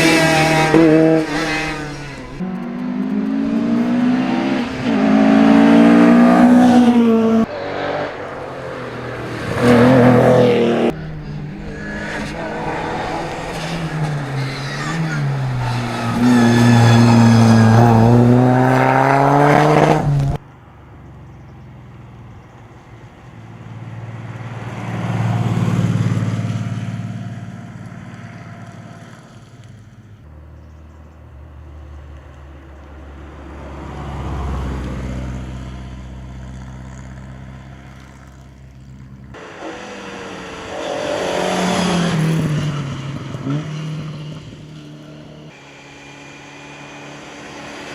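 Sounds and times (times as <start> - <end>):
car engine revving: 0.0 - 20.4, 33.9 - 47.9
cars passing: 0.0 - 47.9.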